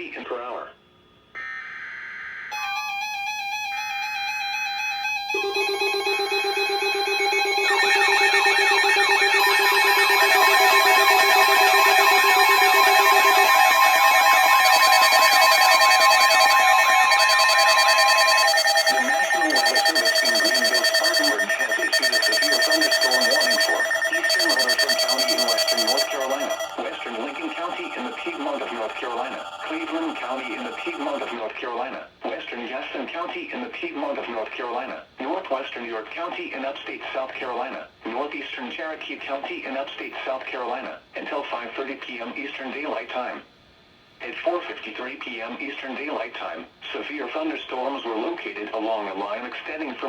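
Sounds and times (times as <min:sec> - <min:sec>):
synthesized electronic alert tones: 0:04.6 - 0:31.3.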